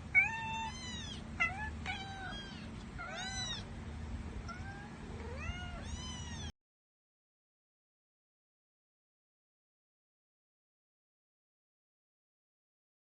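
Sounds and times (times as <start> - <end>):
steady low hum: 0.0 - 6.5
kittens meowing: 0.2 - 3.7, 4.4 - 6.5.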